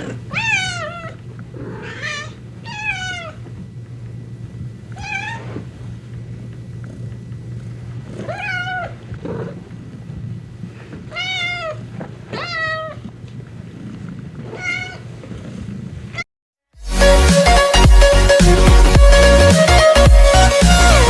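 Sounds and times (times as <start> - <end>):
cat meowing: 0.0 - 3.5, 5.0 - 5.6, 8.2 - 9.1, 11.1 - 13.1, 14.4 - 15.1
low hum: 0.0 - 16.2.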